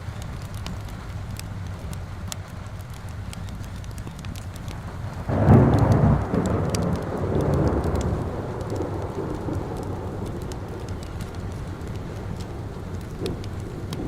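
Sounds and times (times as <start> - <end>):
steady rain: 0.0 - 14.0
wood fire crackling: 0.0 - 14.0
thunder rumbling: 5.2 - 14.0.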